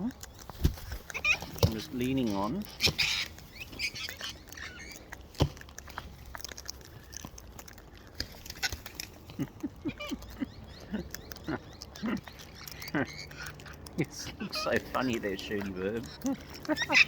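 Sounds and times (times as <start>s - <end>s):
beaks pecking and cracking food: 0.0s - 17.0s.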